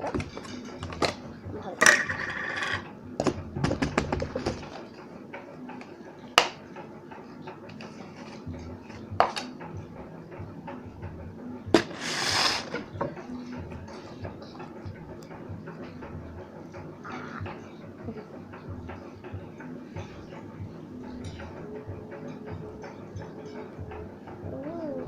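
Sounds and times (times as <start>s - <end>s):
short hiss: 11.9s - 12.8s.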